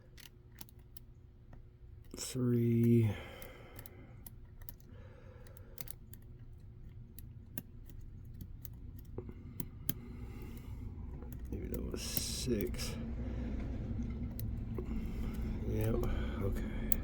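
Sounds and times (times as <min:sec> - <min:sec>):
lock pick metallic clicks: 0:00.0 - 0:13.0, 0:13.9 - 0:17.0.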